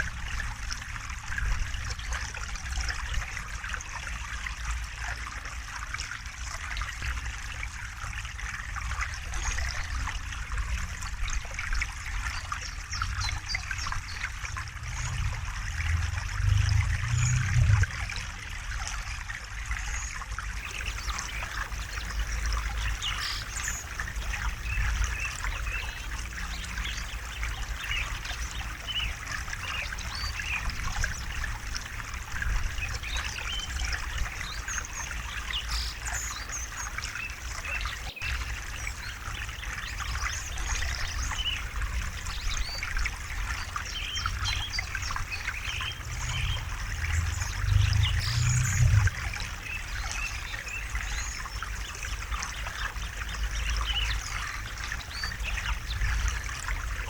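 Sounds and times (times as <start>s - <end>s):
river water flowing: 0.0s - 57.0s
low rumble: 14.6s - 18.3s, 45.0s - 50.0s.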